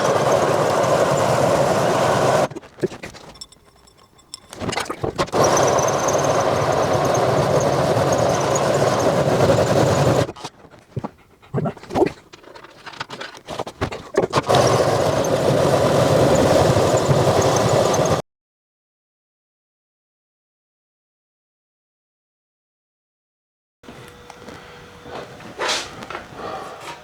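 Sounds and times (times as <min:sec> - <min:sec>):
power drill boring into steel: 0:00.0 - 0:02.5, 0:05.2 - 0:10.3.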